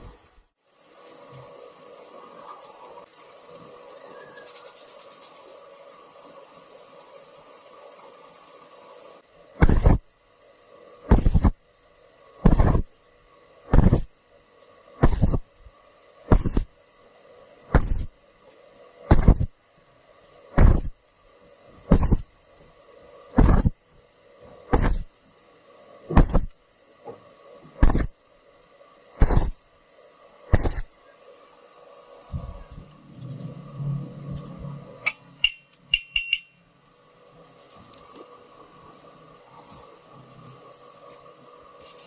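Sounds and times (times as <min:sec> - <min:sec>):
faint steady hum: 0:00.0 - 0:42.0
hammer striking metal: 0:35.1 - 0:36.6.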